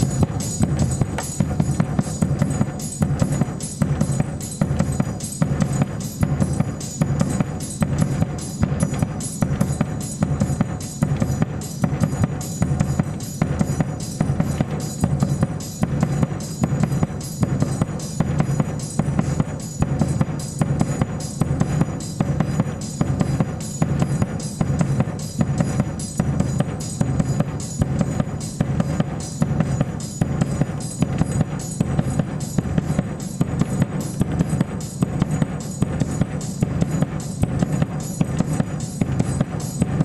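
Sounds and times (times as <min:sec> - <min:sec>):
faint high ringing: 0:00.0 - 0:10.6
bass drum beat: 0:00.0 - 0:40.0
percussion loop: 0:00.0 - 0:40.0.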